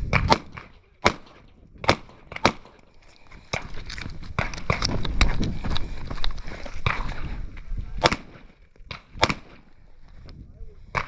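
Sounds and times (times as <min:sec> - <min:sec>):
airsoft pistol shots: 0:00.1 - 0:02.8, 0:08.0 - 0:09.6.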